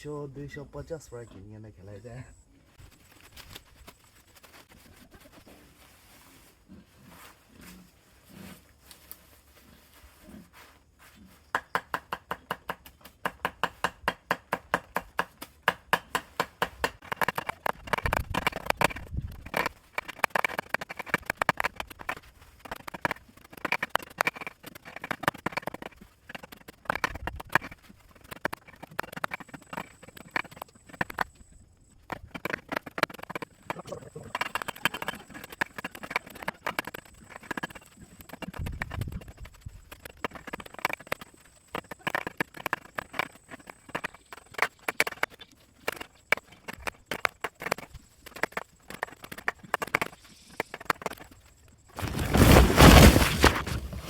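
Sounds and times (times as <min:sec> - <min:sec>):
blade chopping leaves: 0:52.0 - 0:54.0.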